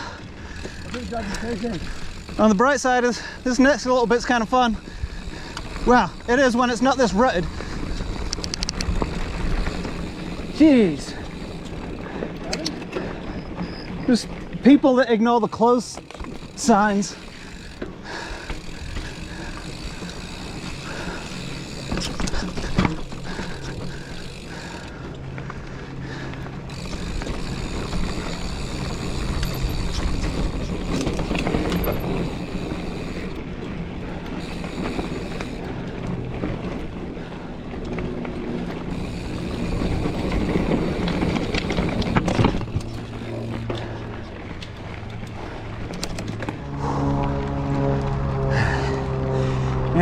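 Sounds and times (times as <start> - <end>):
bike rattling: 0.0 - 50.0
bike tyres on dirt trail: 0.0 - 50.0.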